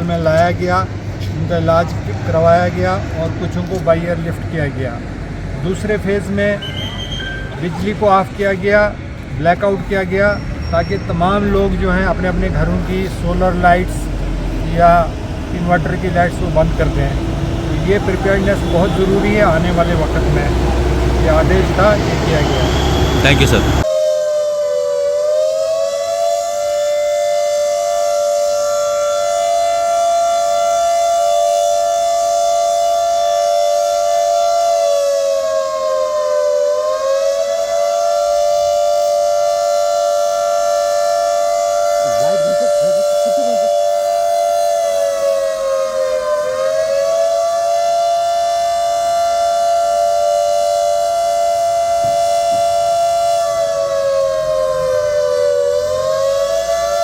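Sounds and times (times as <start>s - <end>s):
siren wailing: 14.6s - 57.0s.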